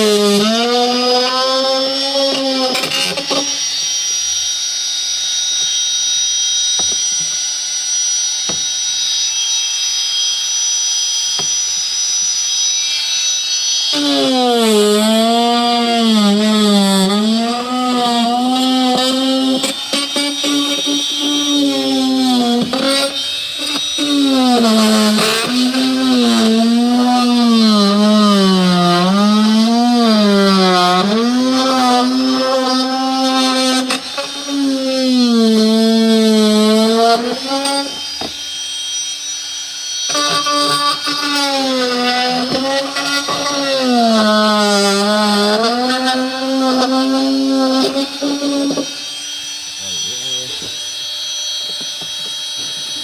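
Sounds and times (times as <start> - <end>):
oscillating multi-tool cutting: 0.0 - 53.0.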